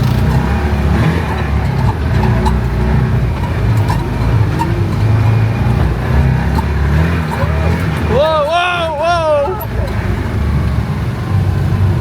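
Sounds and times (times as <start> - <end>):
knocks and rattles from bumps: 0.0 - 8.5
jeep engine running: 0.0 - 12.0.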